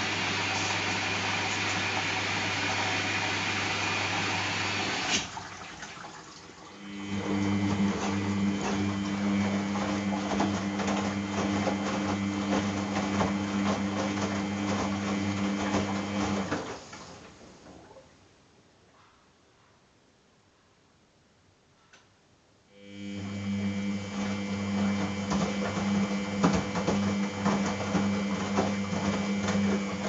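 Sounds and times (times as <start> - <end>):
water rushing into washing machine: 0.0 - 18.1, 23.1 - 30.0
drum motor humming: 23.1 - 30.0
wet laundry tumbling clicks: 24.8 - 30.0.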